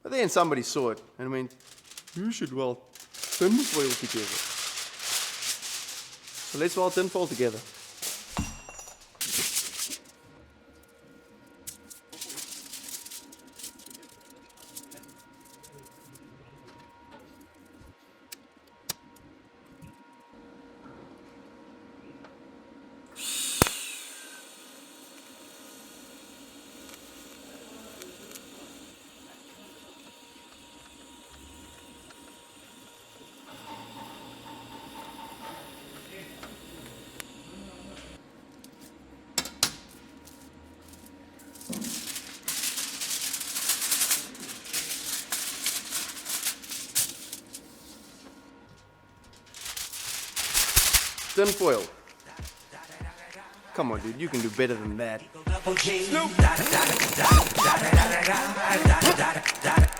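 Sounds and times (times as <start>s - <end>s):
welding arc hissing: 3.0s - 10.0s, 23.2s - 34.3s, 49.6s - 53.5s, 55.7s - 59.9s.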